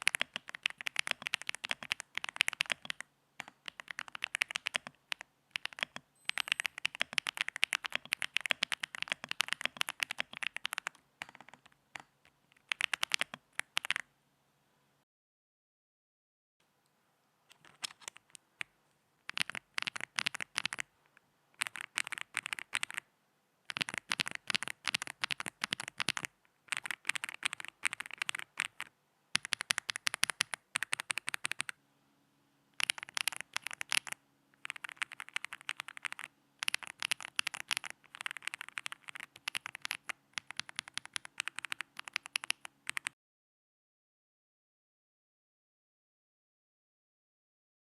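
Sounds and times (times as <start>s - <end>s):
mechanical keyboard typing: 0.0s - 14.0s, 17.5s - 18.4s, 19.3s - 20.9s, 21.6s - 23.0s, 23.7s - 31.7s, 32.8s - 43.2s
faint low hum: 0.0s - 15.0s, 16.6s - 43.1s.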